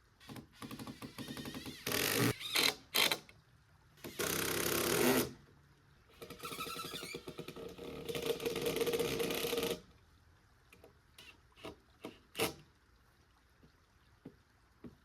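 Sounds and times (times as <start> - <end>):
power driver driving screw: 0.3 - 3.2.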